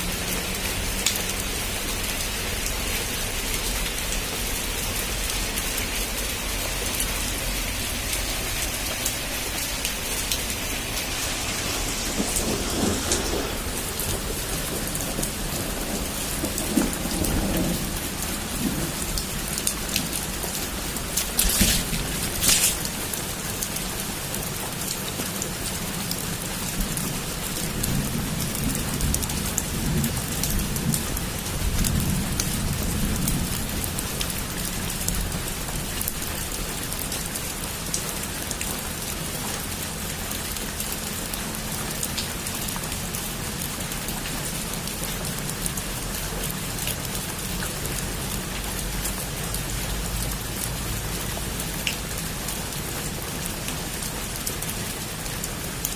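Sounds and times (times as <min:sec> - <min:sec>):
heavy rain drumming on a roof: 0:00.0 - 0:55.9
low rumble: 0:07.5 - 0:23.1
loud splash: 0:07.7 - 0:15.0, 0:21.0 - 0:23.2.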